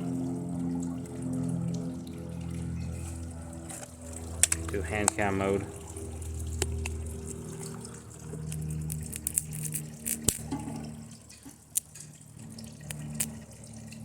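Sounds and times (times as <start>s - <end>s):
low hum: 0.0s - 14.0s
circuit board sizzling and crackling: 8.3s - 10.5s, 12.8s - 13.4s.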